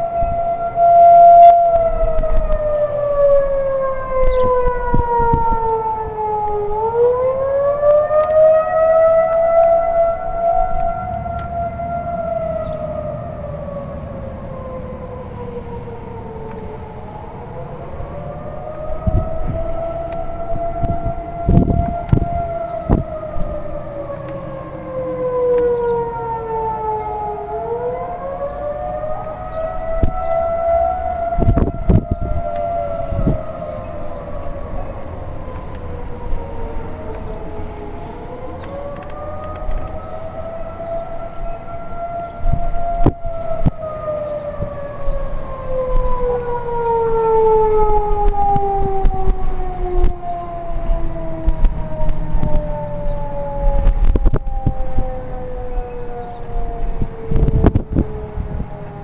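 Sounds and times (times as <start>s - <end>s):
electronic warning siren: 0.0s - 59.0s.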